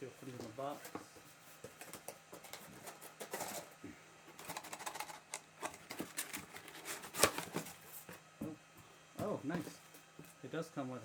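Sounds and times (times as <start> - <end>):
cardboard packaging rustling: 4.4 - 8.2.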